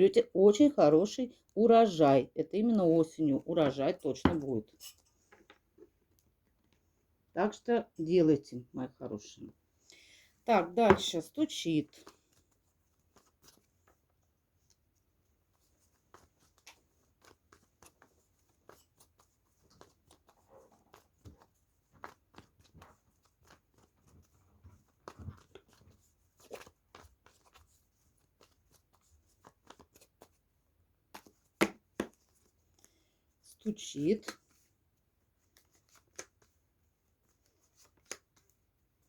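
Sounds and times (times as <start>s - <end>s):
cards shuffled by hand: 11.9s - 14.0s, 15.5s - 32.9s, 34.0s - 34.8s, 35.4s - 36.6s, 37.2s - 39.0s.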